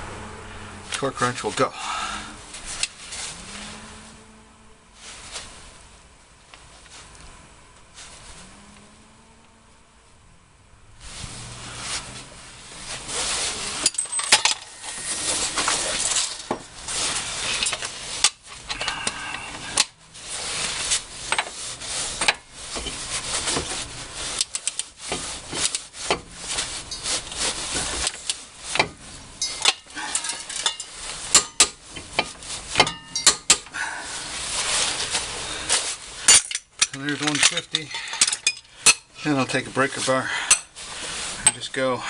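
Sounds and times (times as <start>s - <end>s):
metal scraping: 11.1s - 42.0s
steel hand tools clinking: 29.4s - 33.7s.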